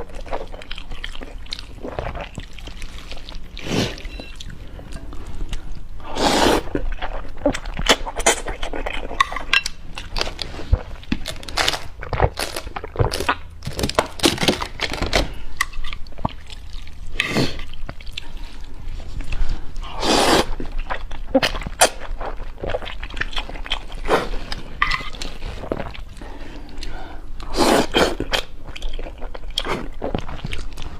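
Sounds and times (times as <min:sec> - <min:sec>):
slurping noodles: 0:06.0 - 0:08.5, 0:19.8 - 0:20.6.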